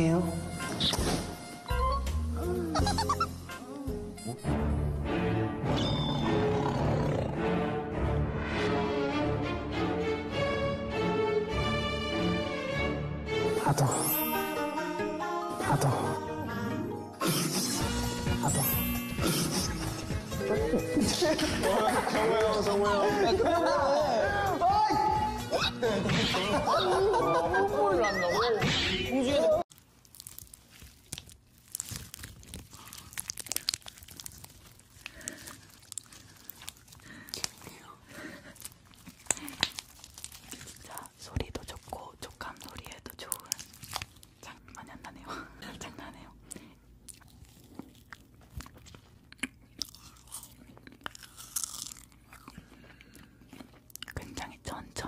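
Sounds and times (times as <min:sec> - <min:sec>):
crackling and crinkling: 0:29.7 - 0:45.4, 0:46.1 - 0:55.0.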